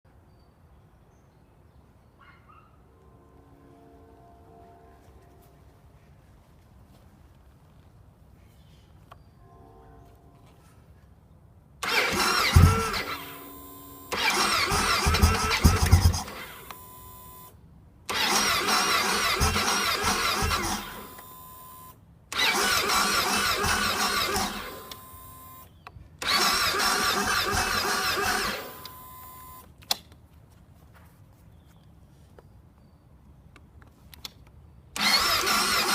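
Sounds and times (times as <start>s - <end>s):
motorcycle engine cranking: 11.8s - 16.7s, 18.1s - 21.3s, 22.3s - 29.0s, 35.0s - 35.9s.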